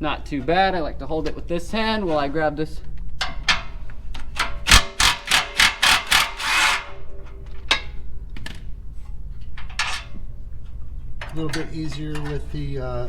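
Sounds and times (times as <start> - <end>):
impact gun bursts: 4.6 - 6.9.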